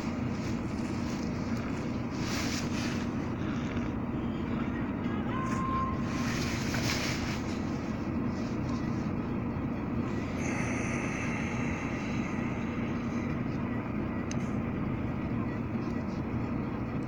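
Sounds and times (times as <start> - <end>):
car engine rumble inside cabin: 0.0 - 17.0
high hiss: 10.1 - 13.2.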